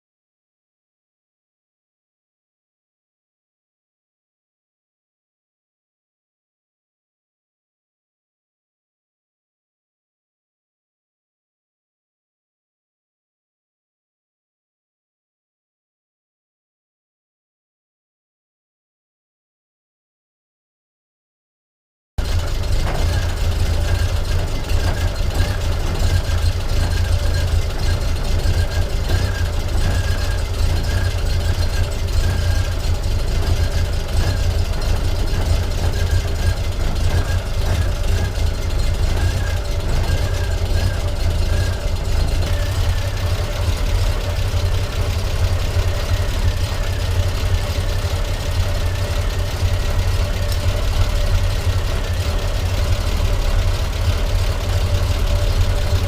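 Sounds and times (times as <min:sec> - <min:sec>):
car engine idling: 0:22.2 - 0:56.0.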